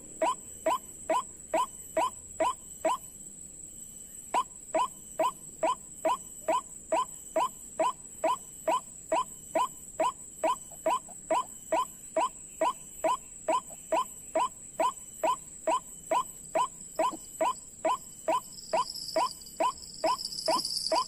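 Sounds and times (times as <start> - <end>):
faint high whine: 0.0 - 21.0
insect-like buzz: 0.0 - 21.0
bird calling with harsh notes: 4.4 - 21.0.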